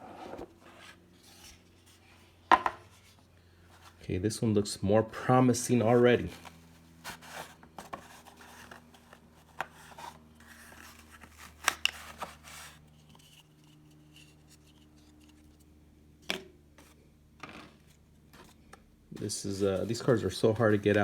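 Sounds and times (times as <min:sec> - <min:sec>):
packaging rustling and scraping: 0:05.8 - 0:15.7, 0:17.6 - 0:21.0.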